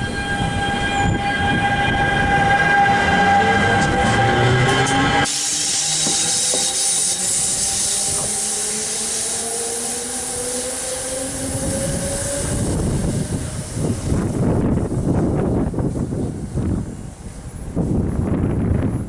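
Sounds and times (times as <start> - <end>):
train horn: 0.0 - 13.9
train wheels rushing past: 0.0 - 16.8.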